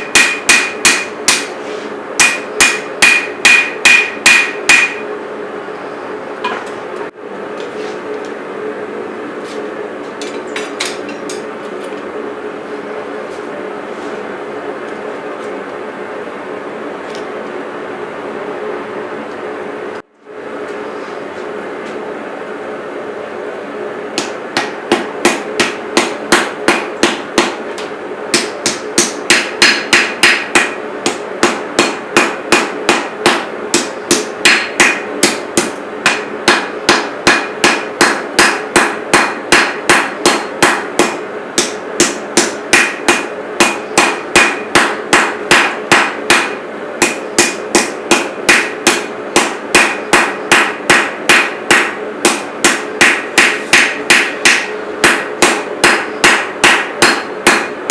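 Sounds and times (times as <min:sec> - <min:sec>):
hammer striking metal on anvil: 0:00.0 - 0:01.6, 0:02.2 - 0:05.1, 0:24.2 - 0:27.6, 0:28.3 - 0:57.9
steady hum: 0:00.0 - 0:57.9.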